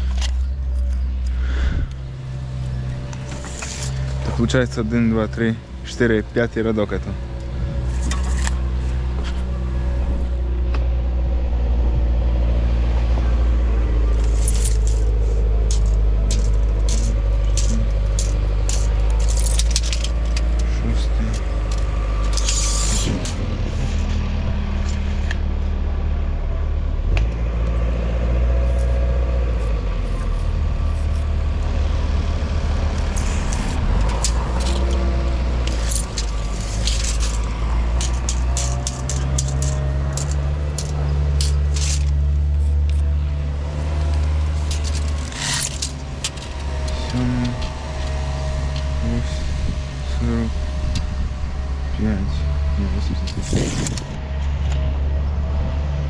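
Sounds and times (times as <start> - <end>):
engine rumbling: 0.0 - 56.0
clicks and rattles: 14.1 - 24.2, 32.9 - 49.4.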